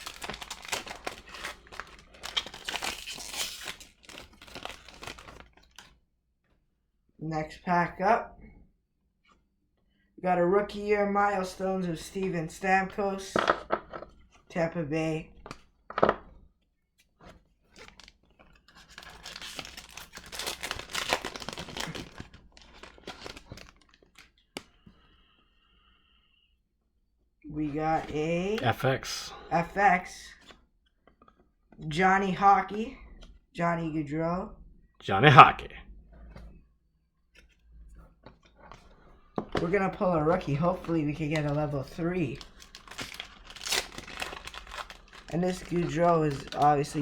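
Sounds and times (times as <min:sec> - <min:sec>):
foil wrapper crinkling: 0:00.0 - 0:06.0, 0:17.6 - 0:24.7, 0:39.6 - 0:47.0.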